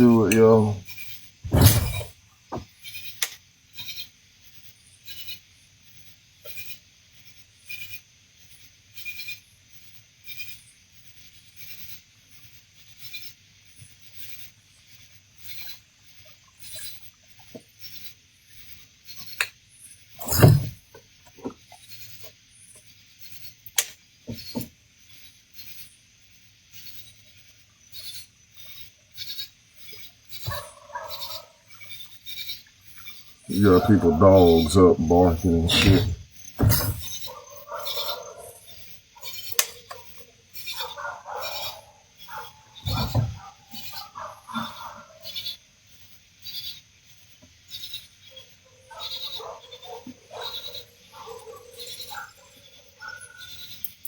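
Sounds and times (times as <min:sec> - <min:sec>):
thump: 0:01.5 - 0:02.7, 0:20.2 - 0:20.8, 0:35.7 - 0:37.2, 0:42.8 - 0:43.4.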